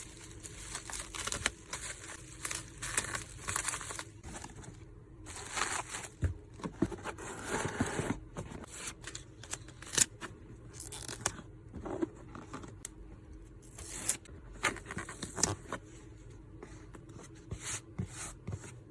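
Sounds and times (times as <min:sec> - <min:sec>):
paper or plastic rustling: 0:00.0 - 0:09.1.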